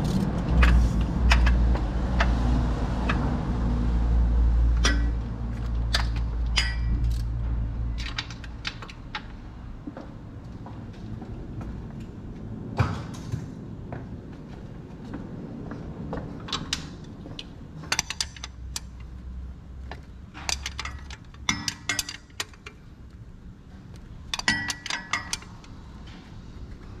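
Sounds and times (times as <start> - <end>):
metal objects clinking: 20.4 - 22.6, 24.3 - 25.6.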